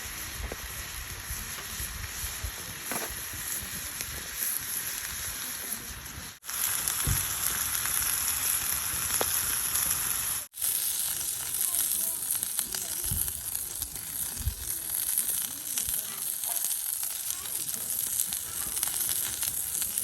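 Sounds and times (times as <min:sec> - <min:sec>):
campfire hissing: 0:00.0 - 0:20.0
faint fire crackles: 0:00.0 - 0:20.0.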